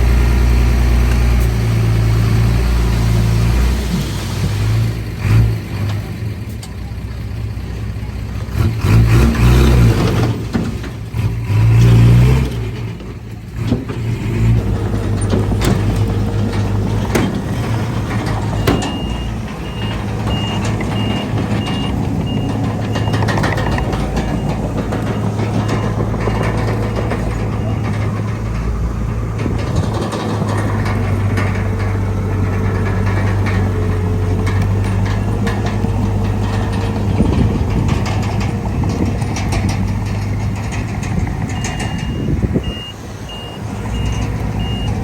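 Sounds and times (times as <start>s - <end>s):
diesel machinery engine surging: 0.0s - 45.0s
reversing alarm beeping: 18.5s - 24.5s, 41.6s - 45.0s.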